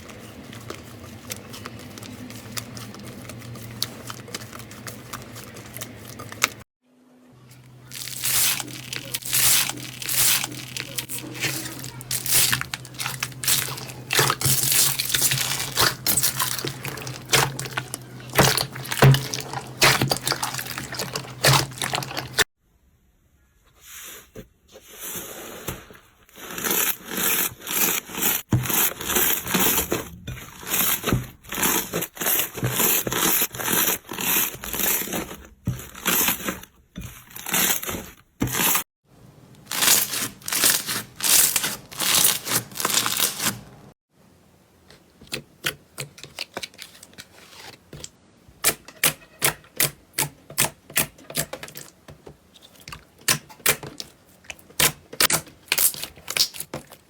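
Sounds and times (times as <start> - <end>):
slime squishing by hand: 0.0 - 6.6, 7.5 - 22.5, 39.6 - 43.9.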